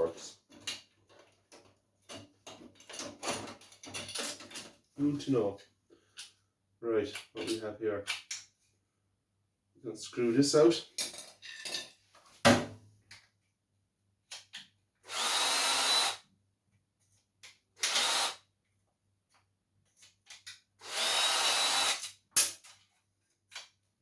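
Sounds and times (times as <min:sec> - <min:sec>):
cordless drill whirring: 0:15.1 - 0:16.2, 0:17.8 - 0:18.4, 0:20.8 - 0:22.0.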